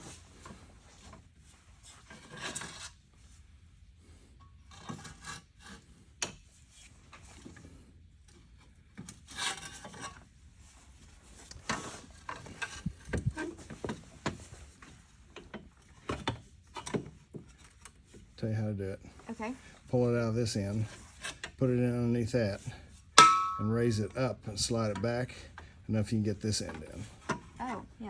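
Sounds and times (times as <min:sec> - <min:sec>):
scraping and rubbing of car parts: 0:00.0 - 0:18.4, 0:19.2 - 0:24.1, 0:26.4 - 0:27.6.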